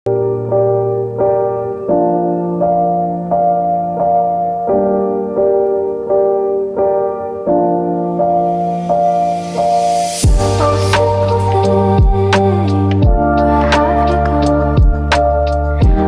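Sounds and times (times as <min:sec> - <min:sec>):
gentle piano chords: 0:00.1 - 0:16.0.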